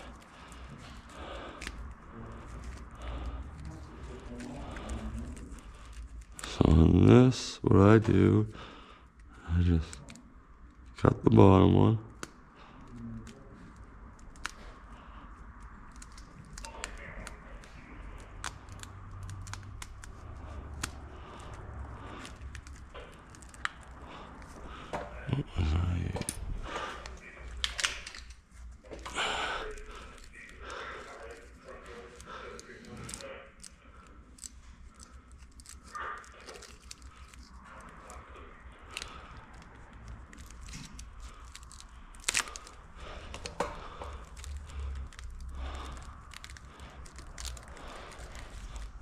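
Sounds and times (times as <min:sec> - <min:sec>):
steady low hum: 0:00.0 - 0:49.0
small clicks and crackles of wires: 0:09.0 - 0:11.1, 0:12.1 - 0:25.1, 0:27.0 - 0:49.0.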